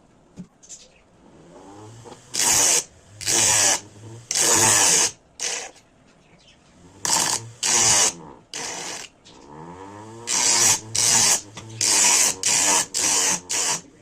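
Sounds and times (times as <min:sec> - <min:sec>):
low motor hum: 0:01.3 - 0:04.7, 0:06.7 - 0:08.5, 0:09.4 - 0:13.0
motor spinning up and down: 0:01.4 - 0:05.6, 0:06.8 - 0:14.0
hissing grinding bursts: 0:01.4 - 0:05.8, 0:06.8 - 0:14.0.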